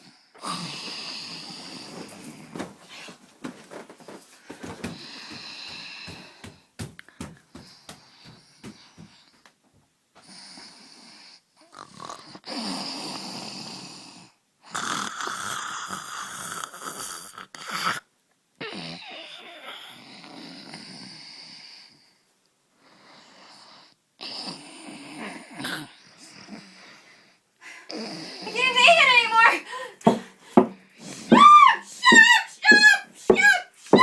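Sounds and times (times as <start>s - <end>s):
person snoring: 0.4s - 1.9s, 10.3s - 18.0s.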